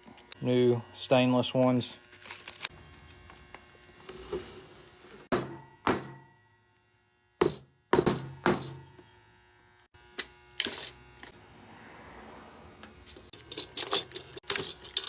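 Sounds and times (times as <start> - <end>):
hammer knocking on wood: 5.3 - 6.2, 7.4 - 8.8.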